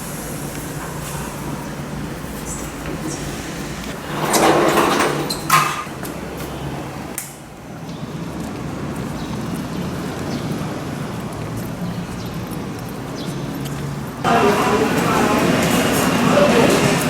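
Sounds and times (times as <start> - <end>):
loud hiss: 0.0 - 5.9
traffic rumble: 0.0 - 17.0.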